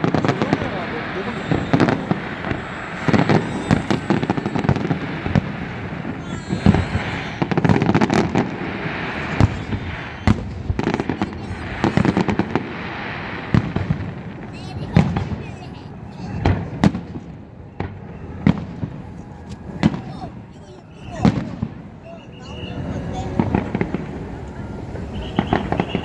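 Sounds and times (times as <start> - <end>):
firework shells bursting: 0.0 - 15.4
fireworks crackling and popping: 0.0 - 26.0.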